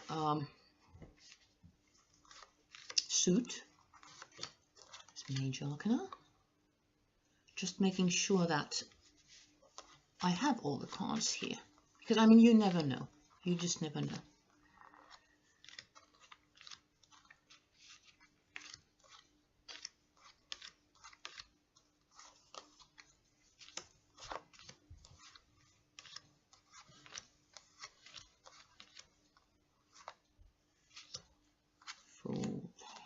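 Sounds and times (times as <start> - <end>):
cards clicking and tapping: 15.0 - 21.5, 22.1 - 29.2.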